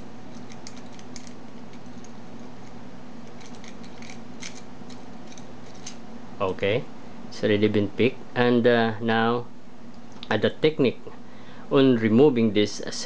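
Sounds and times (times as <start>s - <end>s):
steady hum: 0.0s - 13.0s
lock pick clicking and scraping: 0.3s - 1.8s, 3.3s - 6.0s.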